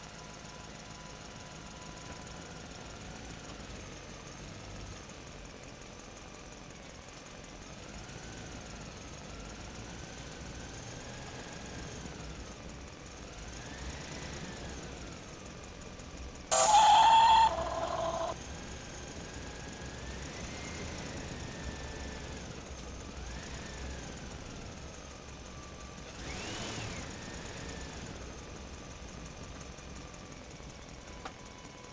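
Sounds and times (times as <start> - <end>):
loud pitched tone: 16.5 - 18.4
toy electric motors whining: 16.5 - 18.4.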